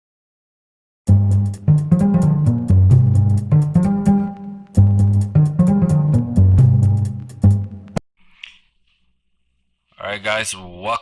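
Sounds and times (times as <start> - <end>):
music with plucked bass and beat: 1.1 - 8.0.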